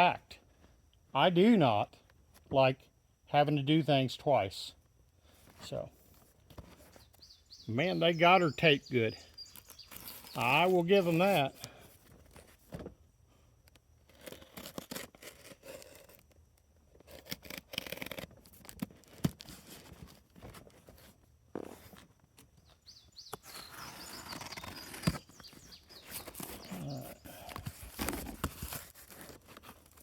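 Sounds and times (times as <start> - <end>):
cardboard scraping and rustling: 5.4 - 7.2, 9.4 - 13.0, 14.1 - 30.0
packing tape tearing: 14.1 - 16.4, 17.0 - 20.2, 23.4 - 30.0.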